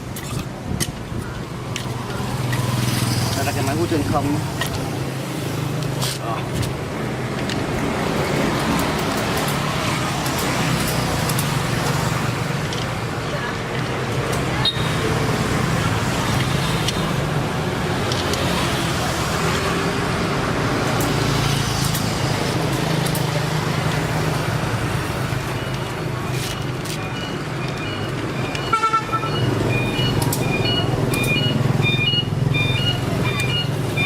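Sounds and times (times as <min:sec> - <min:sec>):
short high beeps: 0:27.0 - 0:34.0
horn-like tone: 0:28.6 - 0:29.4.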